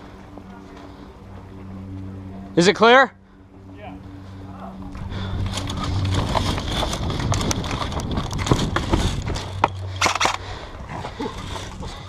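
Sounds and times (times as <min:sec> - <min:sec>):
low steady hum: 0:00.0 - 0:12.0
footsteps: 0:03.5 - 0:10.5
gear rattling: 0:04.8 - 0:12.0.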